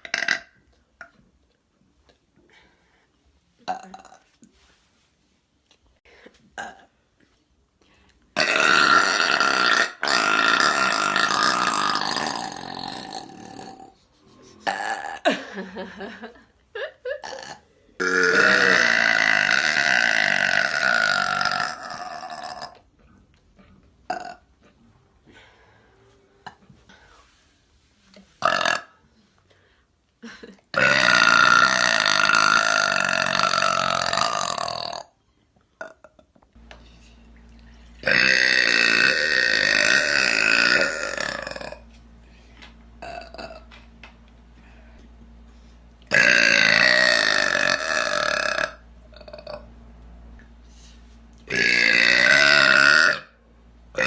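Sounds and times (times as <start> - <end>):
woman belching: 0.0 - 0.6, 3.6 - 4.3, 6.6 - 6.9, 8.4 - 13.9, 14.6 - 15.4, 17.2 - 22.8, 24.1 - 24.5, 28.4 - 29.0, 30.7 - 35.1, 38.0 - 41.8, 43.0 - 43.7, 46.1 - 49.6, 51.5 - 53.4.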